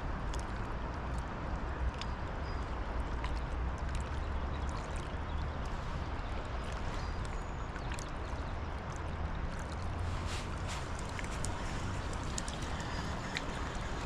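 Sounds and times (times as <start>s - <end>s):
river water rushing: 3.7s - 14.0s.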